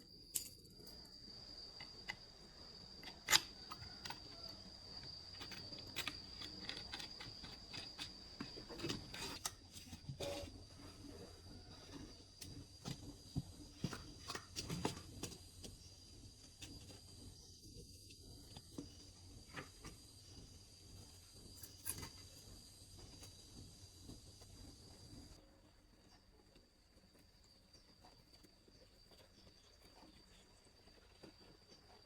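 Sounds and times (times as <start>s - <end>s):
light clicks and knocks of hand work: 0.2s - 10.5s.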